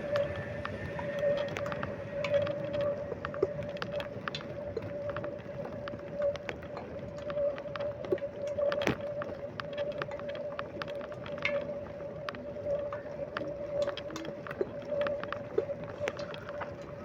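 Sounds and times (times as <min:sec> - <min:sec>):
bicycle whine: 0:00.0 - 0:05.5.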